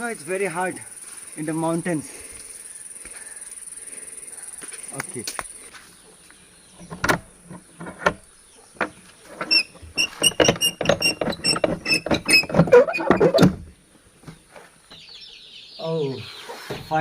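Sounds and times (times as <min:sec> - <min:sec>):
clatter of knocks: 0:08.8 - 0:14.4.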